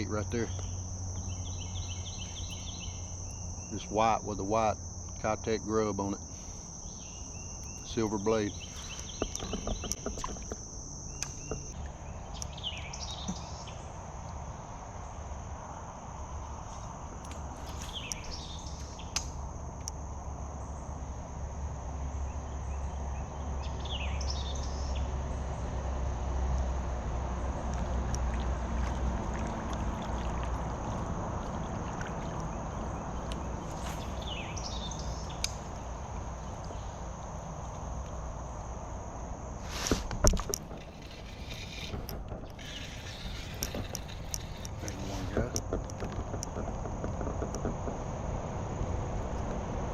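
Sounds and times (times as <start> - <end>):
high insect drone: 0.0 - 49.9
knocks and rattles: 7.8 - 10.7, 39.9 - 48.6
water rushing: 28.2 - 33.7.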